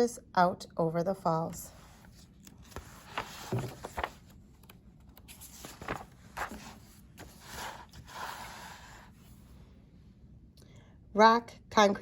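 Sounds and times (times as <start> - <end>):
soft rustles: 1.8 - 4.3, 5.3 - 7.9.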